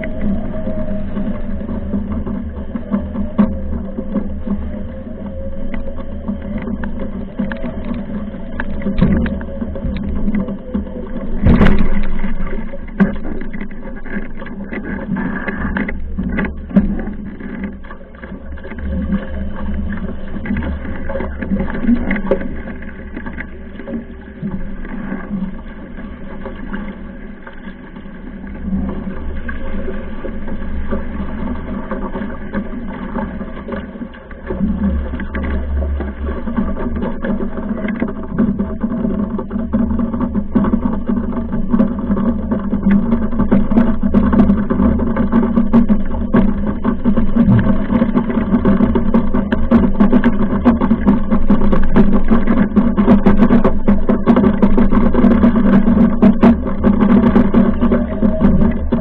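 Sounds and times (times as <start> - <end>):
water rushing past boat: 0.0 - 59.0.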